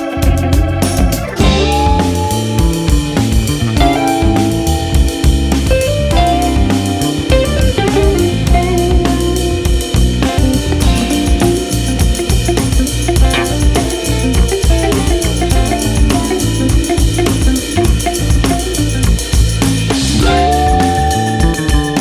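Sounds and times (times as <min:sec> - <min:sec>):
band music with drums bass guitar: 0:00.0 - 0:22.0.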